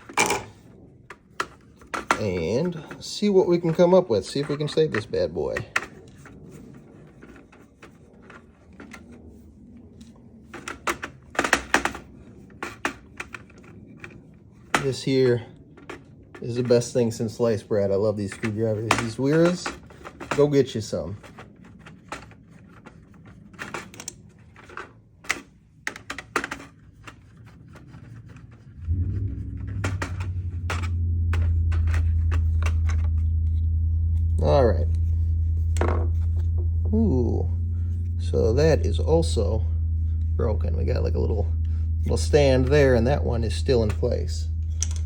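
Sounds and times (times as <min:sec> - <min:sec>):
loud steady low hum: 0:28.6 - 0:45.0.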